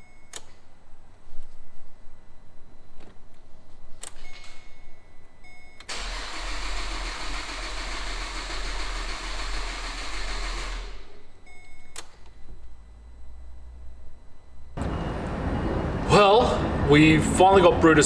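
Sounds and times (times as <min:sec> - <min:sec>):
engine starter cranking: 0:05.9 - 0:11.3.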